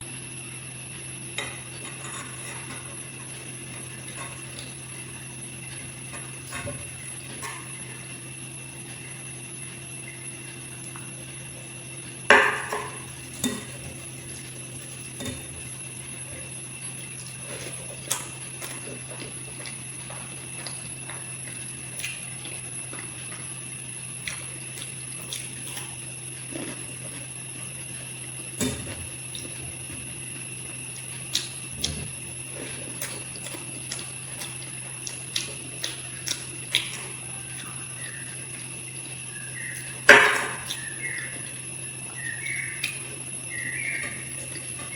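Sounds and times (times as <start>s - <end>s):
electrical hum: 0.0s - 44.9s
tableware clinking: 12.3s - 13.8s.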